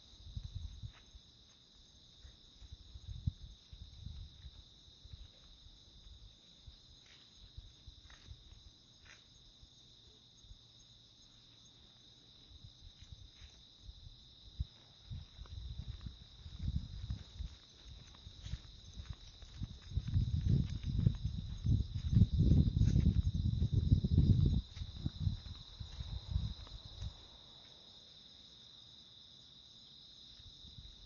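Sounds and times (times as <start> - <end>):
insects chorus: 0.0 - 31.0
footsteps: 0.4 - 9.4, 12.9 - 13.8, 14.6 - 28.2.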